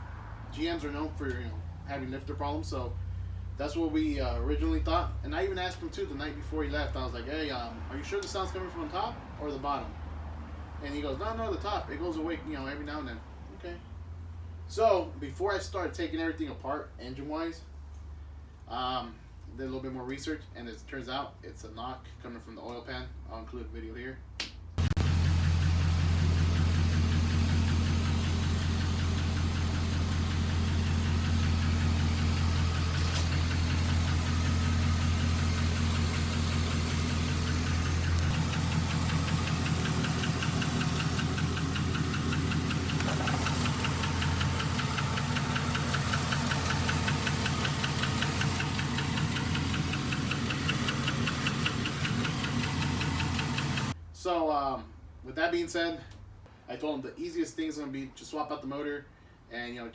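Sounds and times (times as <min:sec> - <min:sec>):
engine rod knocking: 0:24.8 - 0:54.0
engine running: 0:24.8 - 0:54.0.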